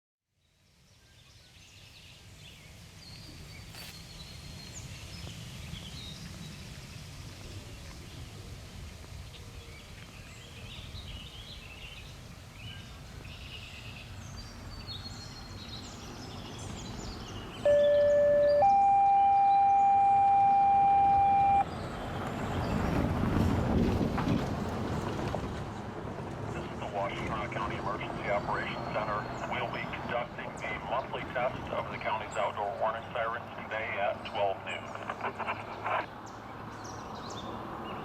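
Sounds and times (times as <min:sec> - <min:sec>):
low wind rumble: 0:02.4 - 0:38.0
bird chirps: 0:12.7 - 0:22.8
electronic warning siren: 0:17.6 - 0:21.7.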